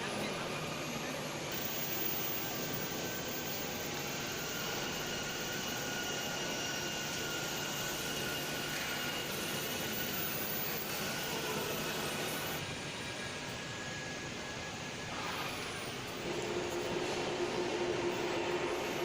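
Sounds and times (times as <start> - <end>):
faint high whine: 0.0 - 19.0.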